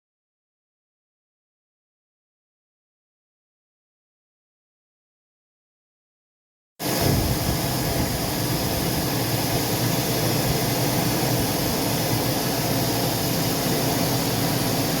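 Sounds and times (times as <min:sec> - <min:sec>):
engine running: 0:06.9 - 0:15.0.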